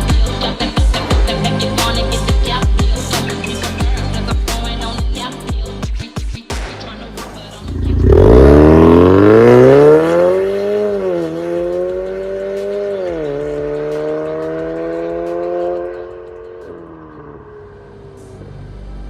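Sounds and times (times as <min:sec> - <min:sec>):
car engine accelerating hard: 0:07.6 - 0:19.0.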